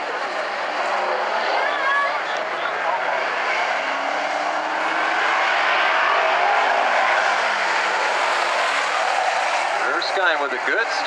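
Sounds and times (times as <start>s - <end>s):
race car engines: 0.0s - 11.0s.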